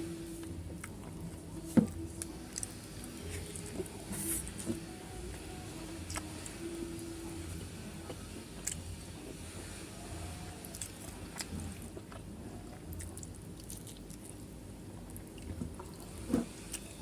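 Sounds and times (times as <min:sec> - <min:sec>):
person chewing food: 0:08.0 - 0:17.0.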